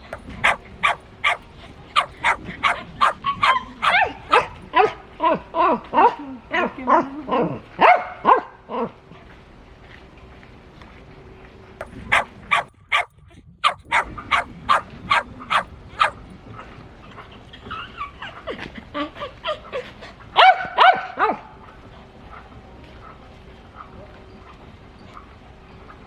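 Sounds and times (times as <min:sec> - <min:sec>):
dog barking: 0:00.0 - 0:04.6, 0:11.8 - 0:16.2
dog yipping and whining: 0:00.1 - 0:01.4, 0:02.0 - 0:04.5, 0:11.8 - 0:16.2.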